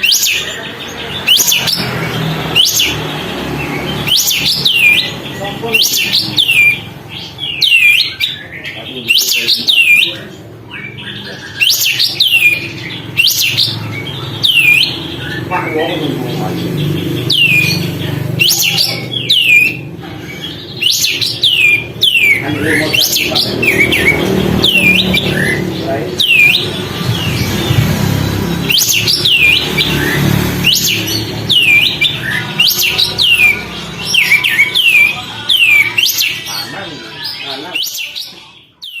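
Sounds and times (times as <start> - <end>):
bird whistled calls: 0.0 - 0.6, 1.2 - 3.0, 3.9 - 15.8, 17.2 - 27.6, 28.5 - 39.0
bulbul singing whistled notes: 20.7 - 39.0.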